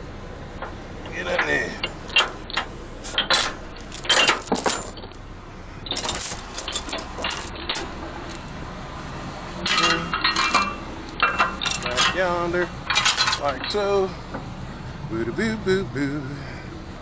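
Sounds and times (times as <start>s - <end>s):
metallic clinks and rattles: 0.6s - 8.4s, 9.6s - 14.0s.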